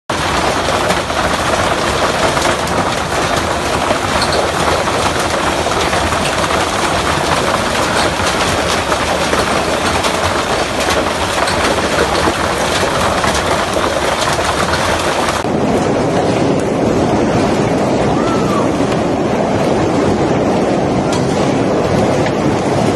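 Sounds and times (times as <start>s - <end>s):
hailstones clicking: 0.1s - 16.6s
strong wind: 0.1s - 22.9s.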